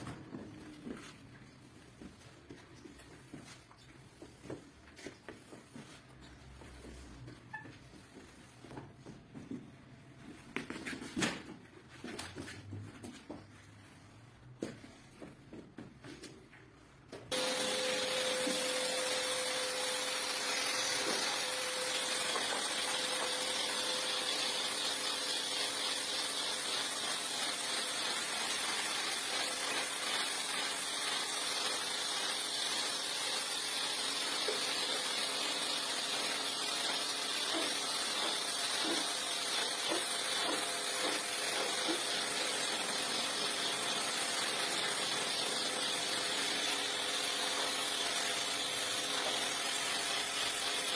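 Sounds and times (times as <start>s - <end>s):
pressure washer spraying: 17.3s - 50.9s.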